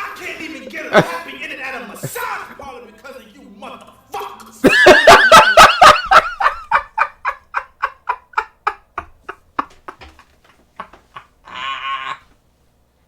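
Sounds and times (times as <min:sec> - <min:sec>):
person laughing hard: 0:04.7 - 0:12.3.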